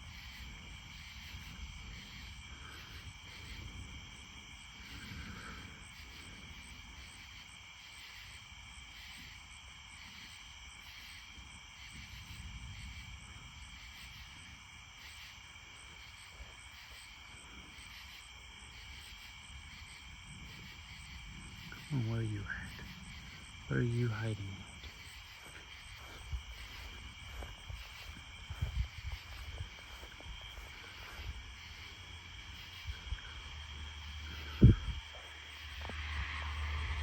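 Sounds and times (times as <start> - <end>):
crickets and insects chirping: 0.0 - 37.0
higher pulsing insect call: 0.0 - 37.0
faint low rumble: 18.9 - 37.0.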